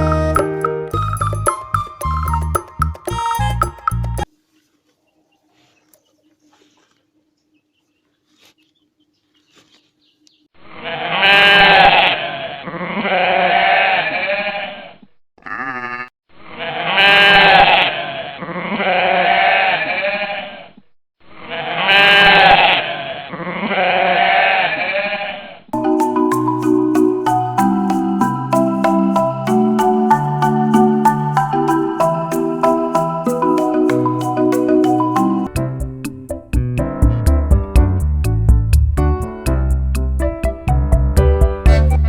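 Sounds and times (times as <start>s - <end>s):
marimba-like music: 0.0s - 4.3s, 25.8s - 42.0s
sheep or goat bleating: 15.4s - 16.1s.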